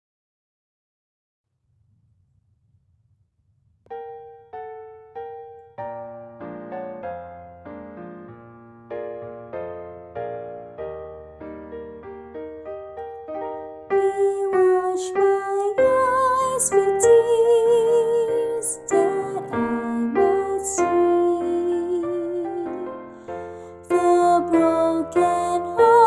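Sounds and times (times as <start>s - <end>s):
piano accompaniment: 3.8s - 26.0s
woman singing with vibrato: 14.0s - 23.0s, 23.9s - 26.0s.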